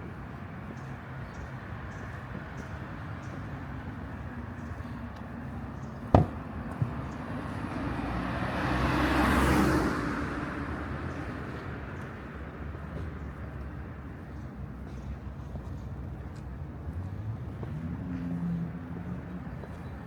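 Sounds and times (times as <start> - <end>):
street traffic noise: 0.0 - 20.0
sharp knock: 6.1 - 6.4
car driving past: 7.4 - 11.0.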